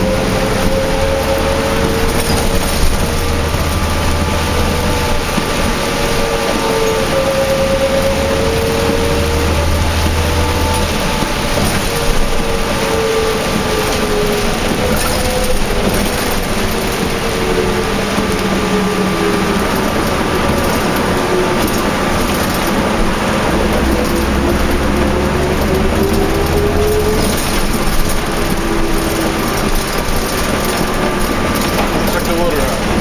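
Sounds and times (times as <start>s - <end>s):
bus engine whine: 0.0s - 33.0s
heavy rain: 0.0s - 33.0s
road noise: 0.0s - 33.0s.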